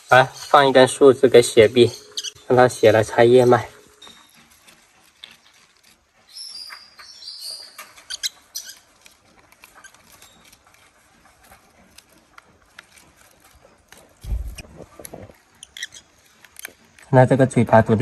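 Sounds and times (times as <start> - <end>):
parrot chirping: 1.6 - 4.4, 6.3 - 8.9, 15.6 - 16.1.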